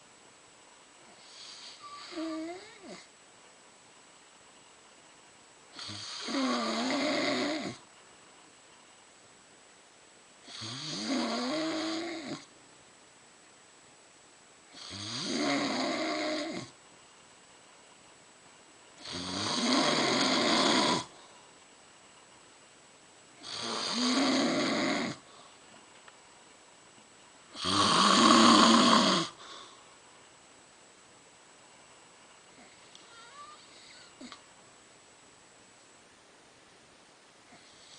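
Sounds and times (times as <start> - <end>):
woman snoring: 1.1 - 3.1, 5.8 - 7.8, 10.4 - 12.5, 14.7 - 16.8, 19.0 - 21.2, 23.4 - 25.3, 27.6 - 29.6, 32.6 - 34.4.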